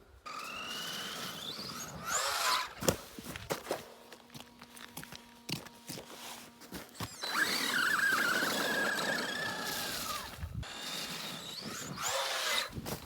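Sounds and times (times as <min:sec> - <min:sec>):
rc car motor whining: 0:00.2 - 0:02.9, 0:06.3 - 0:13.0.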